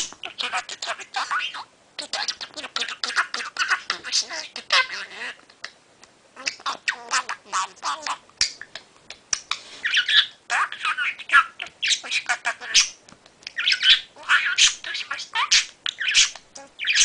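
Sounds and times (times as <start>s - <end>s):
budgerigar chattering: 9.9s - 17.0s.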